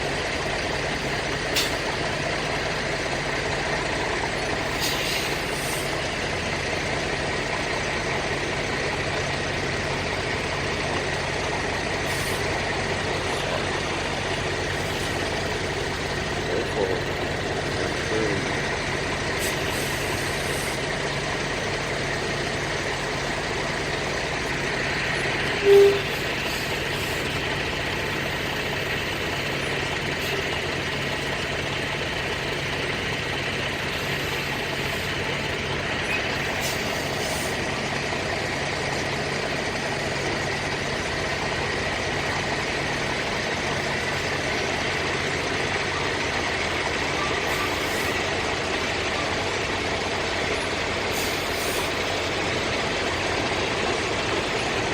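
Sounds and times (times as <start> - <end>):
diesel truck engine idling: 0.0 - 54.9
short beep: 25.6 - 26.2.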